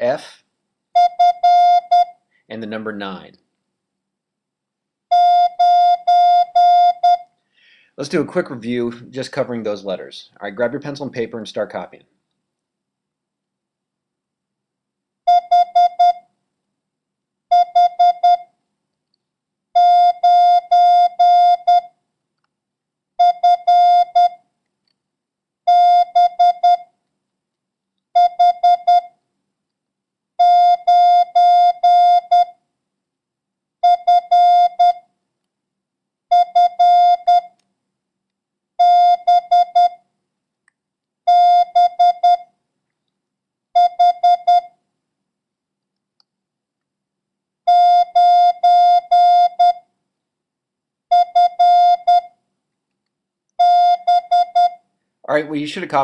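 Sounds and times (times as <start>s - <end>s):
morse code beeps: 15.3s - 16.2s, 17.5s - 18.4s, 23.2s - 24.4s, 25.7s - 26.9s, 28.2s - 29.1s, 30.4s - 32.5s, 33.8s - 35.0s, 36.3s - 37.5s, 38.8s - 40.0s, 41.3s - 42.5s, 43.8s - 44.7s, 47.7s - 49.8s, 51.1s - 52.3s, 53.6s - 54.8s.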